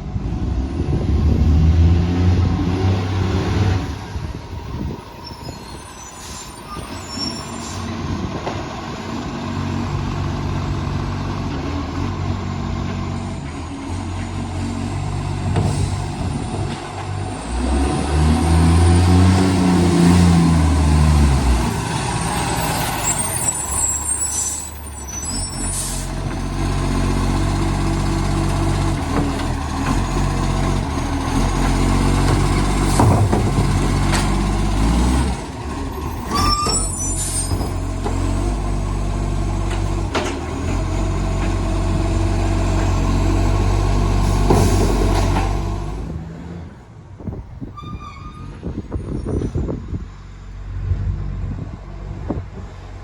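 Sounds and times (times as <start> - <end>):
truck diesel engine revving: 0.0 - 5.0, 7.9 - 46.9.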